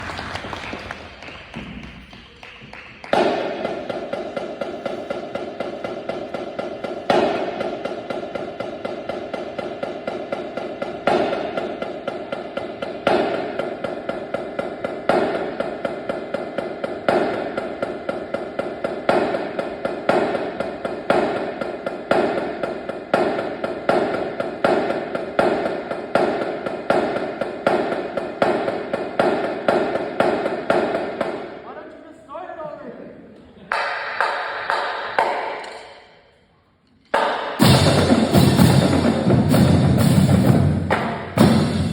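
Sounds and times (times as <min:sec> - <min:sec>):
fast percussion strikes: 0:00.0 - 0:31.8, 0:33.7 - 0:36.2, 0:37.0 - 0:41.9
accented percussion hit: 0:37.2 - 0:41.9.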